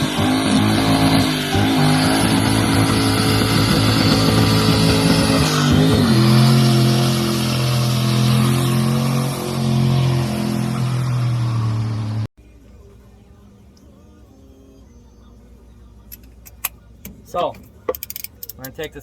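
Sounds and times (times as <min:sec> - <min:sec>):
car engine running under load: 0:00.0 - 0:12.8.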